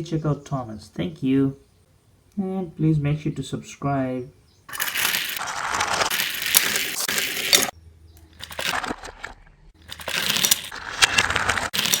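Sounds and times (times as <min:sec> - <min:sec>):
rustling crackling handling noise: 0:08.4 - 0:12.0.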